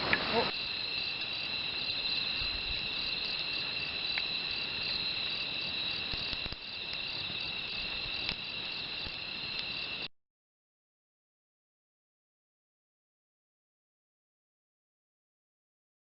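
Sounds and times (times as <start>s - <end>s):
crickets chirring: 0.0s - 10.1s
wood fire crackles: 0.0s - 10.1s.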